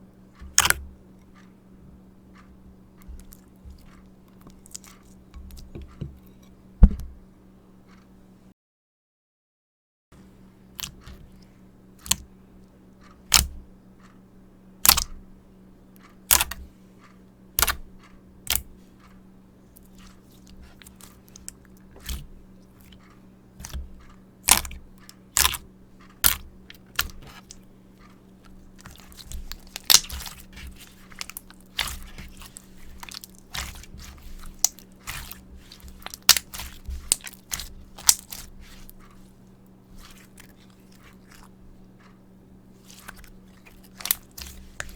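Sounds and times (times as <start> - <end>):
slime popping and crackling: 14.8 - 15.1, 24.5 - 24.8, 25.4 - 25.6, 26.2 - 27.5, 28.8 - 38.9.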